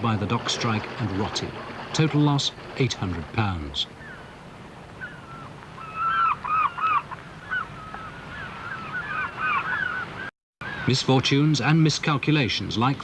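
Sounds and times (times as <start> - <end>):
geese honking: 4.0 - 11.0.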